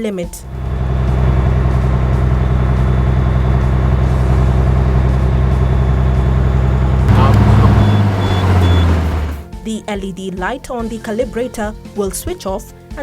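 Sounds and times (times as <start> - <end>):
car engine humming steadily: 0.5 - 9.5.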